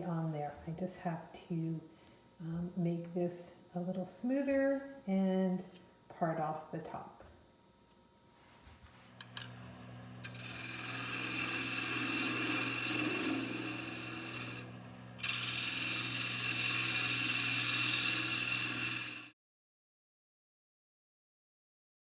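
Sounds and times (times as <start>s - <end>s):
tool scraping spinning wood: 9.0s - 19.3s
wood lathe motor humming: 9.1s - 19.3s.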